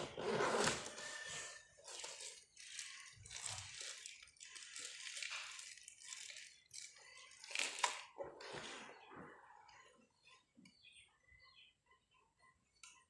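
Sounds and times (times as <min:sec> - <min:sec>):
packaging rustling and crinkling: 0:00.1 - 0:08.8.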